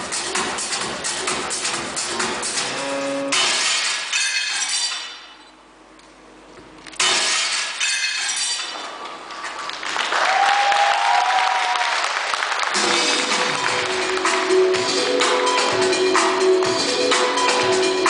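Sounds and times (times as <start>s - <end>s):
glass breaking crashes: 3.4s - 5.4s, 7.0s - 9.0s.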